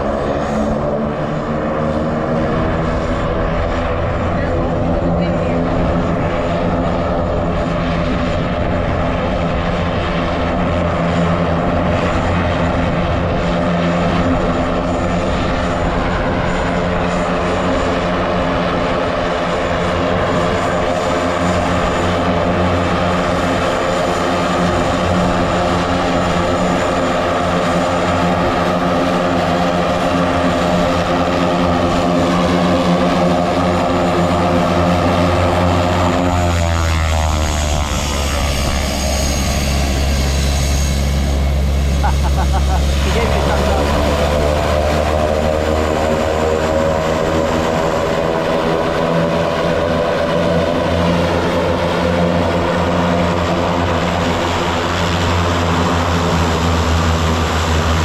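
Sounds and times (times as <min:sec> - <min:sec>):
propeller engine droning: 0:00.0 - 0:58.0.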